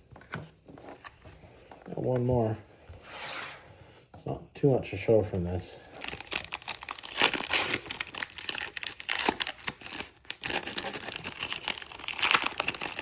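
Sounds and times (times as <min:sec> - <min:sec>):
plastic wrapper crinkling: 0:06.0 - 0:13.0.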